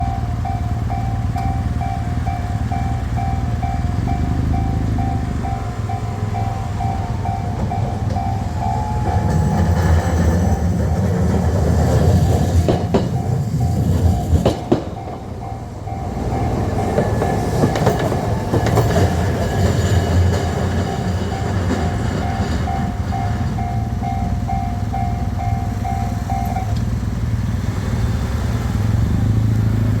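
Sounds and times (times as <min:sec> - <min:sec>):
level-crossing warning bell: 0:00.0 - 0:27.4
wheels clicking over rail joints: 0:00.0 - 0:27.4
streetcar rumbling past: 0:00.0 - 0:30.0.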